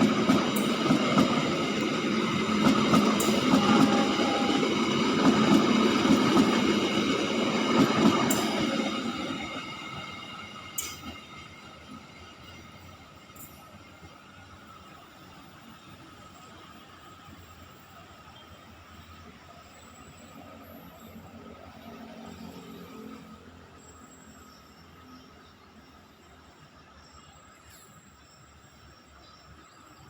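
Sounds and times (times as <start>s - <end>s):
steady high tones: 0.0s - 13.8s
train wheels rumbling: 0.0s - 18.0s.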